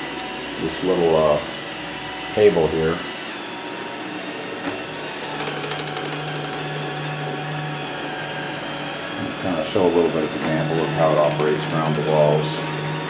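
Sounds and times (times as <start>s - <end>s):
robot vacuum whirring: 2.1s - 13.0s.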